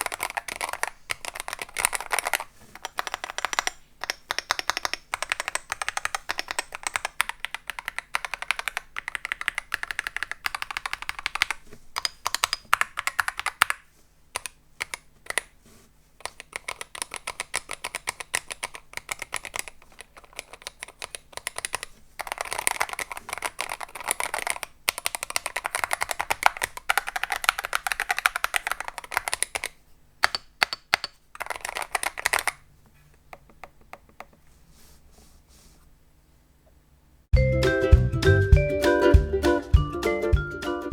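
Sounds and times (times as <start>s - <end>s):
keyboard keys clicking: 0.0s - 13.8s, 14.4s - 15.6s, 16.2s - 32.6s.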